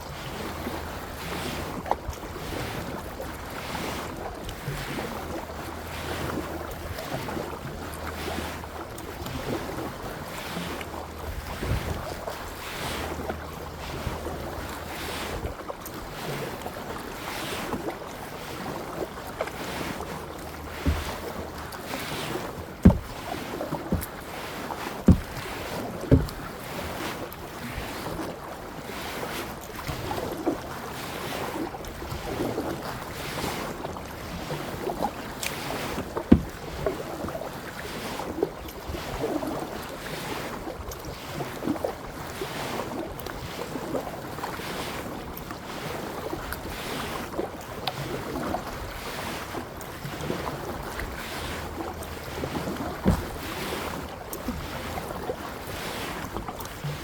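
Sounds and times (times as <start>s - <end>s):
paddle splashing water: 0.0s - 57.0s
wind on microphone: 11.2s - 12.3s
sharp knocks: 20.8s - 21.2s, 22.8s - 23.2s, 23.9s - 24.1s, 25.1s - 25.4s, 26.1s - 26.4s.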